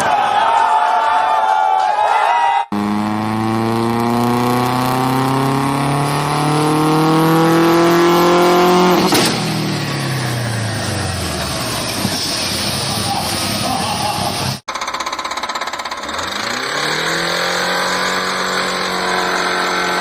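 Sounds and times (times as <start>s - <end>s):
car engine revving high: 2.7s - 11.9s, 16.1s - 20.0s
sharp crack: 8.9s - 9.7s.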